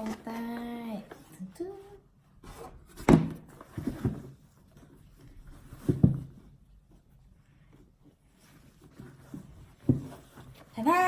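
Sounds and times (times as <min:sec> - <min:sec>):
knocks of box being handled: 0:05.6 - 0:06.5.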